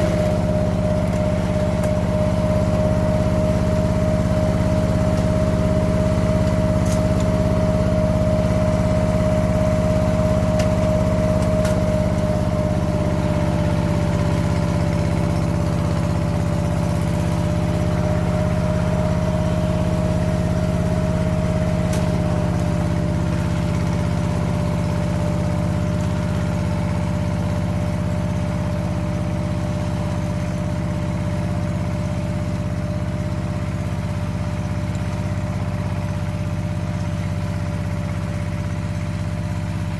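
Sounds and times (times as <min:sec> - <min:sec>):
diesel tractor engine running: 0:00.0 - 0:39.9.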